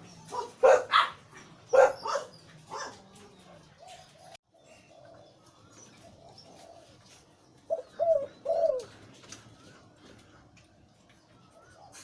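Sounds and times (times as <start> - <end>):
dove cooing: 1.7 - 10.4.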